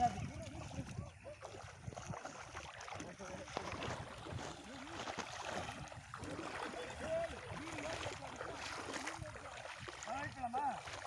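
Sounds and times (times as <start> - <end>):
stream water flowing: 0.0 - 11.0.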